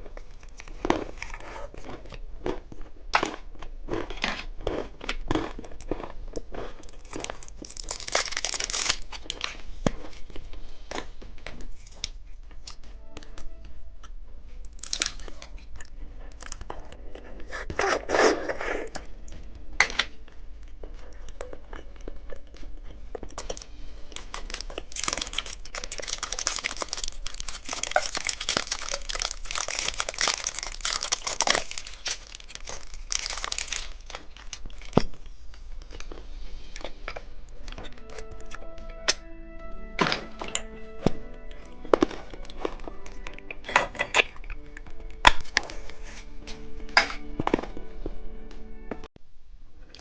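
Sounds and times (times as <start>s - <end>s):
plastic wrappers crinkling: 6.6s - 11.1s, 14.6s - 17.0s, 19.8s - 38.7s.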